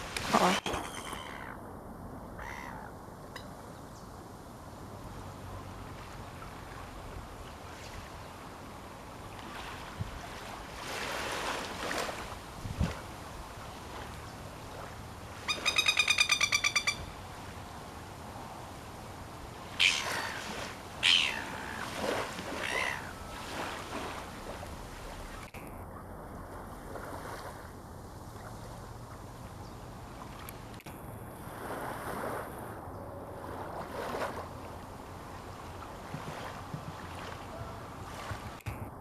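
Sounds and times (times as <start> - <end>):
wind: 0.0 - 39.0
shorebird calls: 0.2 - 1.6, 2.4 - 3.0, 15.3 - 17.2, 19.7 - 24.2
surf: 17.0 - 39.0.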